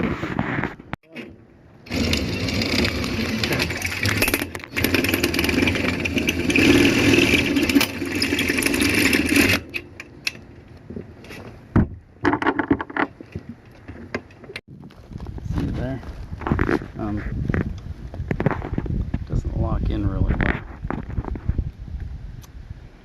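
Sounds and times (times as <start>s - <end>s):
power drill running: 1.9s - 9.7s.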